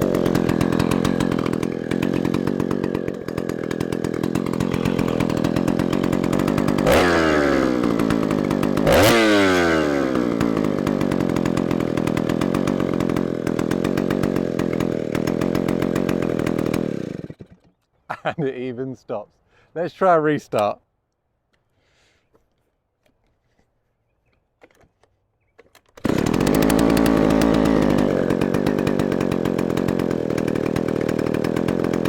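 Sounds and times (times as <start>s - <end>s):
chainsaw engine revving: 0.0s - 17.8s, 25.9s - 32.0s.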